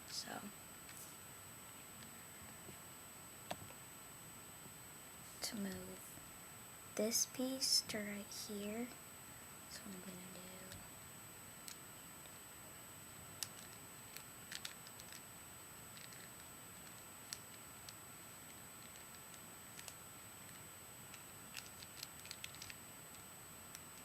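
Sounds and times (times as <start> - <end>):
steady background hiss: 0.0 - 24.0
plastic puzzle cube clicking: 13.4 - 15.2, 18.8 - 22.8.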